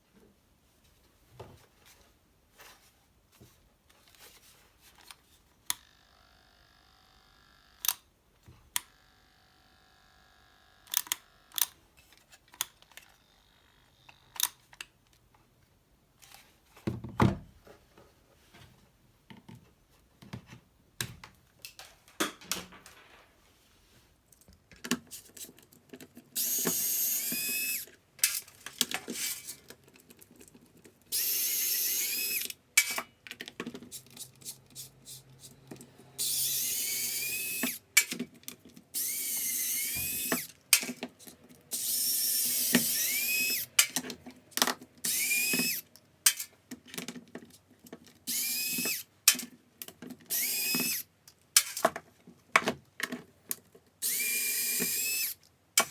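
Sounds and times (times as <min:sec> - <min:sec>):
power tool motor whining: 0:05.8 - 0:07.9, 0:08.8 - 0:11.6, 0:26.4 - 0:27.9, 0:31.1 - 0:32.5, 0:36.1 - 0:37.8, 0:39.0 - 0:40.5, 0:41.7 - 0:43.8, 0:45.0 - 0:45.8, 0:48.3 - 0:49.1, 0:50.3 - 0:51.1, 0:54.0 - 0:55.9
clicks and handling noises: 0:10.9 - 0:13.2, 0:14.0 - 0:23.6, 0:24.2 - 0:31.1, 0:37.6 - 0:39.0, 0:42.7 - 0:54.0.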